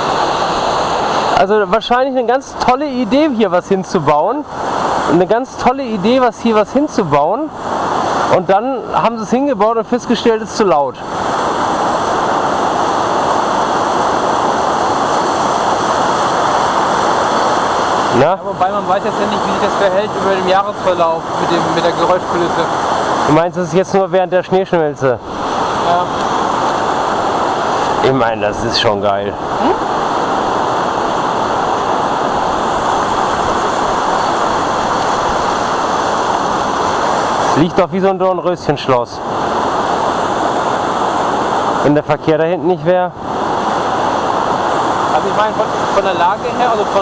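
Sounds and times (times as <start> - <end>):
waterfall rushing: 0.0 - 47.0.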